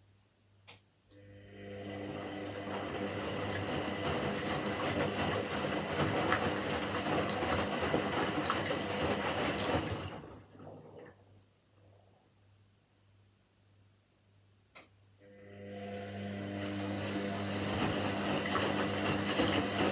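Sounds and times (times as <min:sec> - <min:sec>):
washing machine motor hum: 0:01.2 - 0:11.4, 0:15.2 - 0:19.9.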